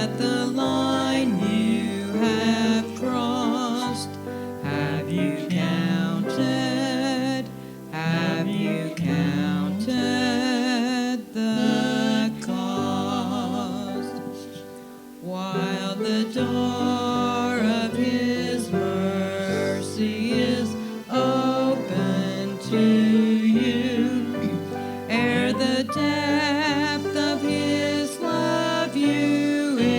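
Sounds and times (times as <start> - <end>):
person singing a hymn: 0.0 - 29.9
instrumental accompaniment: 15.8 - 29.9.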